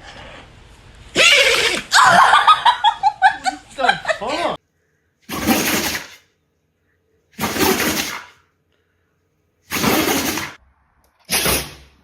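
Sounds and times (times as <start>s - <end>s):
dog sneezing: 5.3s - 6.2s, 7.4s - 8.4s, 9.7s - 10.6s.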